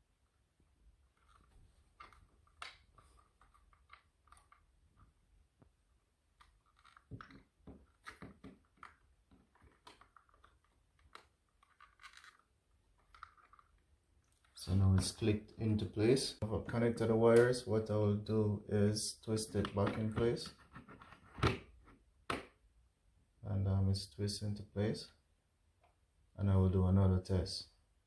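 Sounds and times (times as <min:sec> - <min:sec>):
rustling: 0:00.9 - 0:15.2.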